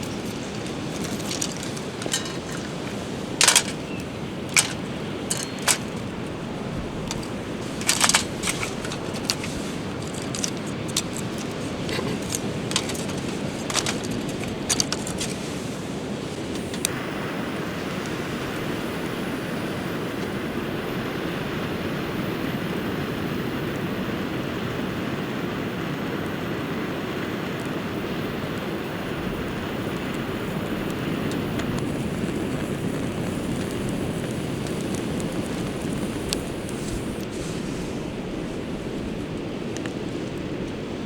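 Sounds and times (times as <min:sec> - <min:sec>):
sea surf: 0:00.0 - 0:41.0
wind on microphone: 0:27.8 - 0:41.0.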